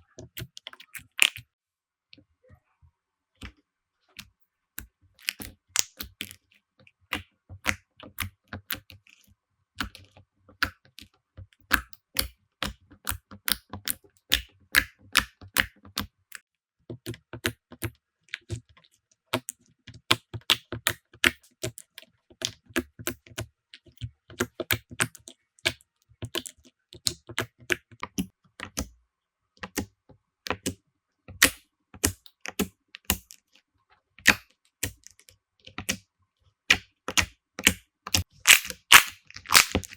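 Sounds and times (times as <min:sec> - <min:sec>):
slime sticky clicks and pops: 0:37.1 - 0:39.9.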